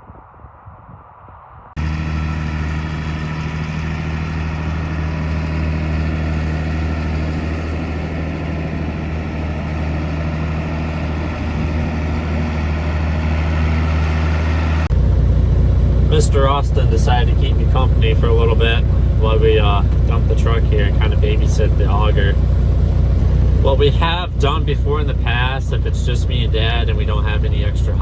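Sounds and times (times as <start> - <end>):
diesel engine running: 1.8 - 28.0
faint outdoor background: 6.6 - 28.0.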